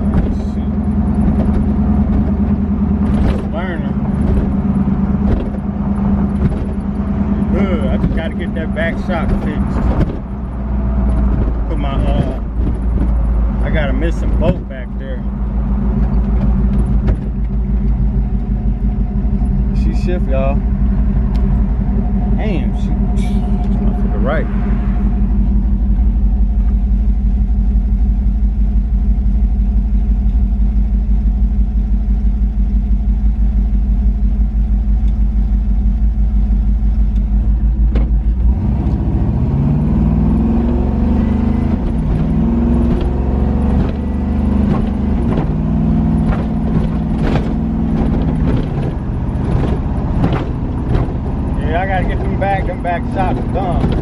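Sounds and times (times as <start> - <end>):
short knocks and rattles: 0.0 - 7.0, 7.8 - 15.3, 15.9 - 18.5, 41.6 - 54.0
car engine droning: 0.0 - 54.0.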